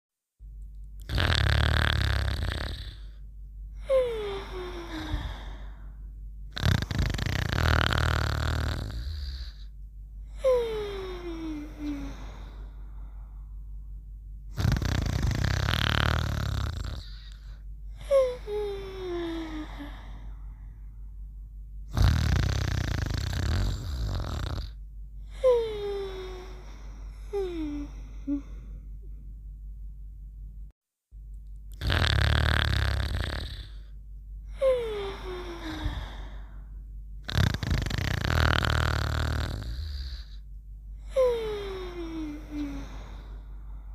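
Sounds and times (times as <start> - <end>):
person snoring: 1.0 - 3.2, 3.8 - 9.7, 10.3 - 12.9, 14.5 - 20.4, 21.9 - 28.8, 31.7 - 40.4, 41.0 - 43.9
snoring: 1.0 - 3.2, 6.5 - 9.7, 14.5 - 17.6, 21.9 - 24.8, 31.7 - 34.0, 37.2 - 40.4.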